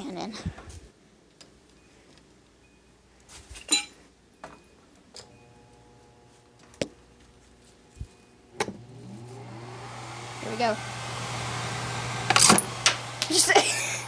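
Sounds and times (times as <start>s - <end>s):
plug and fan clicks and knocks: 12.2s - 13.4s.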